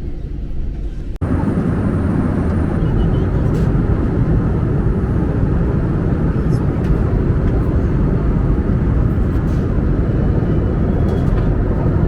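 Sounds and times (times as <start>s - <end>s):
jet engine cabin rumble: 0.0s - 12.0s.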